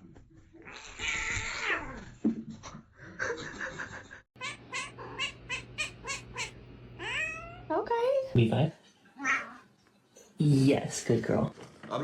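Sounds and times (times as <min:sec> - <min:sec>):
cat yowling: 0:00.6 - 0:02.1, 0:04.4 - 0:07.7.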